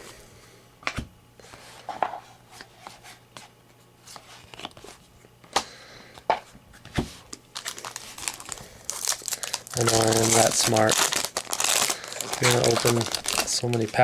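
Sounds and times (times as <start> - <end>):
cards being flipped through: 4.1 - 5.0, 6.8 - 14.0.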